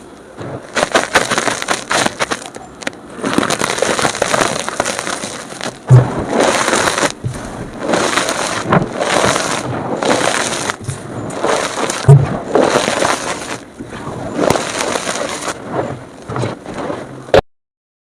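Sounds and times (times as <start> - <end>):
chalk crunching and crumbling: 0.7 - 15.6
low thump: 5.8 - 6.4.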